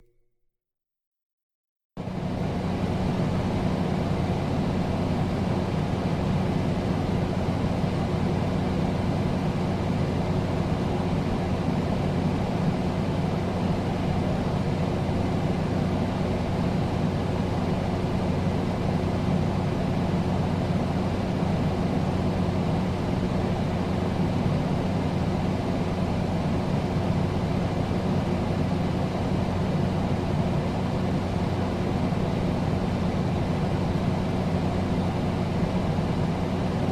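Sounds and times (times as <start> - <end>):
constant low hum: 2.0 - 36.9
air conditioner air rushing: 2.1 - 36.9.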